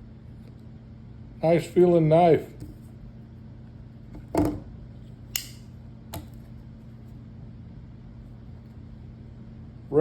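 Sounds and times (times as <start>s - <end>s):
steady low hum: 0.0s - 10.0s
folding knife blade clicks: 5.3s - 5.7s.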